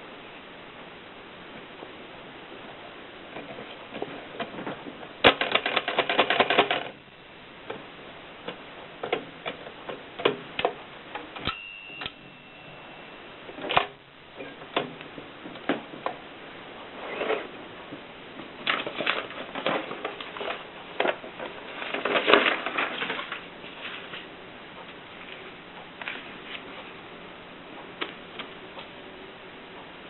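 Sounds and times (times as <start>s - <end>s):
typewriter clicking: 5.2s - 7.0s
thin ringing tone: 11.4s - 13.7s.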